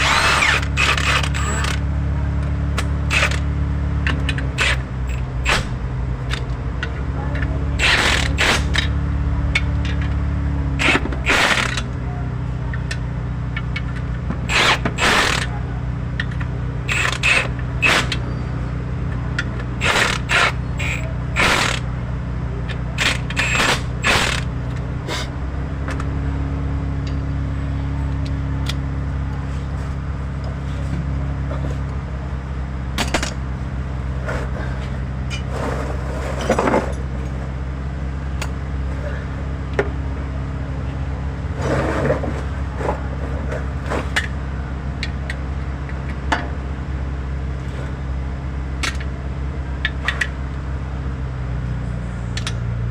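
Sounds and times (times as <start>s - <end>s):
motor humming: 0.0s - 30.6s.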